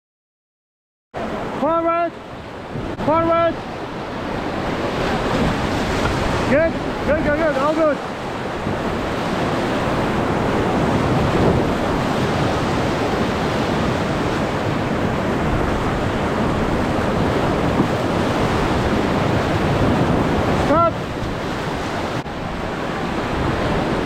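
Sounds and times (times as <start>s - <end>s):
whitewater rushing: 1.2s - 24.0s.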